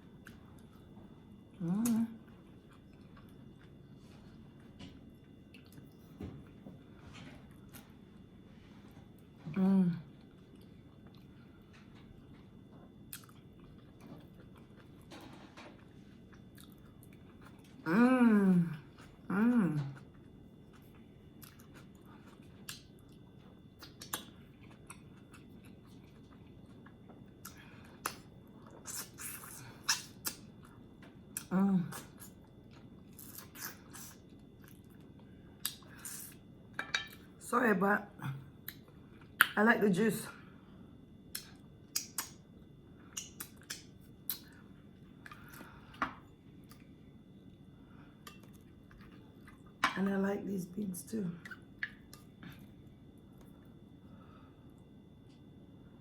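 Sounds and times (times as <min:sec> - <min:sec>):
chewing mouth sounds: 0:13.1 - 0:15.1, 0:20.0 - 0:30.8.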